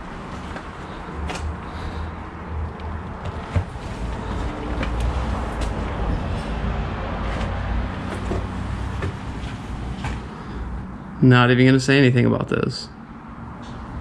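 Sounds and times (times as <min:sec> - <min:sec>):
footsteps on wooden stairs: 0:03.0 - 0:06.1, 0:07.3 - 0:10.3.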